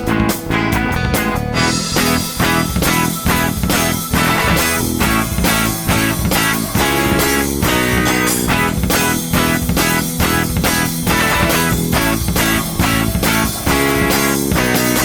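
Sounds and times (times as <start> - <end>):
rock music with electric guitar: 0.0 - 15.0.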